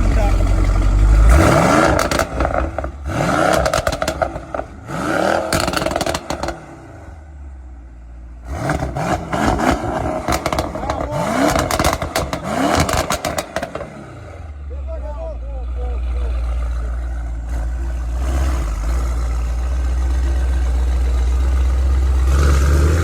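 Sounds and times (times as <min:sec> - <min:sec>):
car engine revving: 0:00.0 - 0:07.6, 0:08.3 - 0:15.0, 0:15.6 - 0:23.0
exhaust crackling pops: 0:01.8 - 0:04.8, 0:09.5 - 0:13.9.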